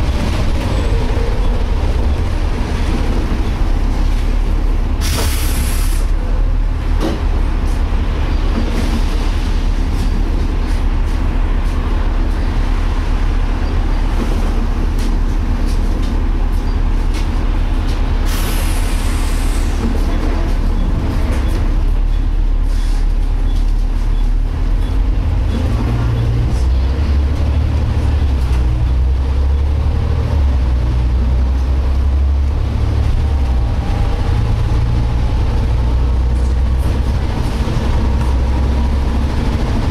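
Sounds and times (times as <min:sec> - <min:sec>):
bus engine droning: 0:00.0 - 0:39.9
air hiss: 0:05.0 - 0:06.1.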